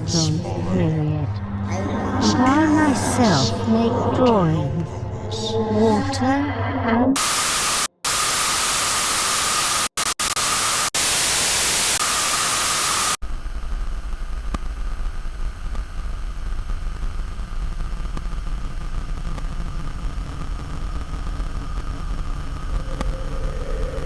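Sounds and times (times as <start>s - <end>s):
faint steady whine: 7.2s - 24.0s
harsh static hiss: 7.2s - 24.0s
low rumbling drone: 22.4s - 24.0s.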